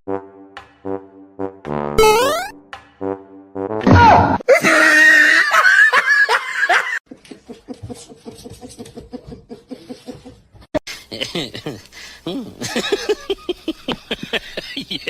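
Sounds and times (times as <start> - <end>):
person laughing loudly: 4.5 - 7.0, 11.1 - 15.0.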